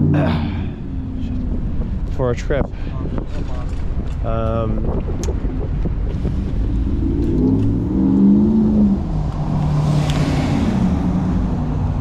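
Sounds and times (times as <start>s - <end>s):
wind rumble on microphone: 0.5s - 12.0s
vehicle engine accelerating: 5.0s - 12.0s.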